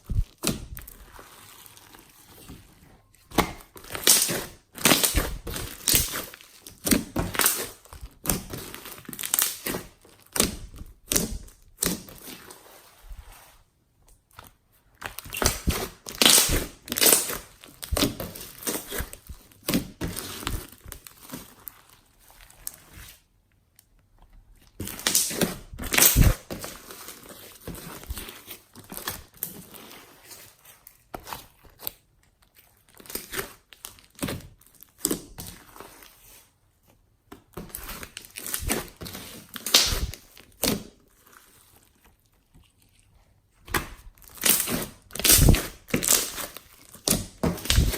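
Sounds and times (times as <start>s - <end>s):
slime squishing and popping: 3.3s - 12.2s, 15.1s - 21.0s, 37.7s - 40.7s, 43.6s - 47.9s.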